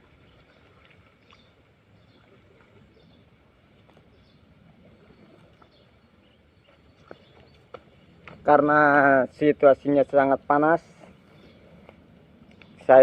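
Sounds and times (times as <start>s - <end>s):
faint chirps and ticks: 11.1s - 12.9s.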